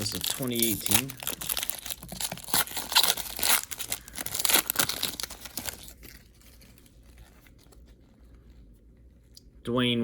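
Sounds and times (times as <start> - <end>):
card pack wrapper crinkling and tearing: 0.0 - 8.0.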